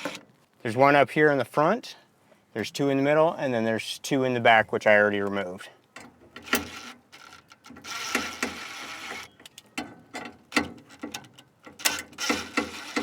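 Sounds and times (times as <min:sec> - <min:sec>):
screwdriver tool running: 0:11.8 - 0:13.0.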